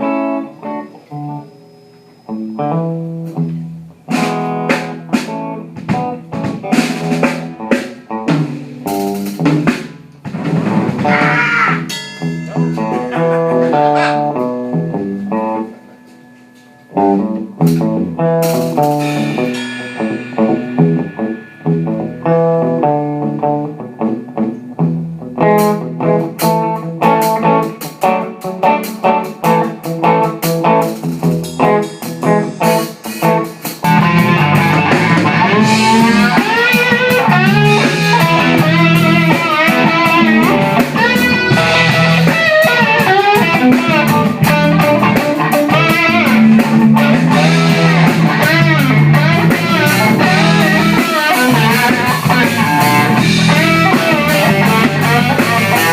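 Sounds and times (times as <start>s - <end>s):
blues-rock band playing: 0.0s - 55.9s
electric guitar: 0.0s - 55.9s
drum and cymbal hits: 4.1s - 15.0s, 17.6s - 23.5s, 29.0s - 55.9s.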